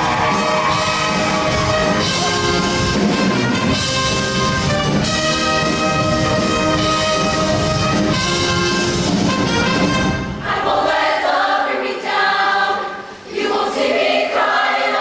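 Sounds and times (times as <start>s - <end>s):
steady drum beat: 0.0s - 10.1s
brass section holding chords: 0.1s - 10.4s.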